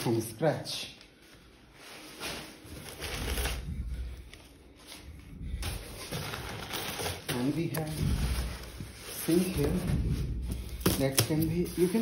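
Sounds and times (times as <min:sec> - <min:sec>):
paper and cardboard rustling: 0:01.7 - 0:12.0.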